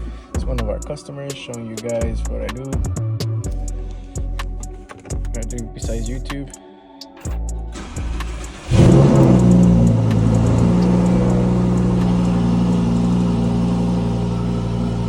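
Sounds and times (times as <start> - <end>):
car engine starting and idling: 7.3 - 15.0.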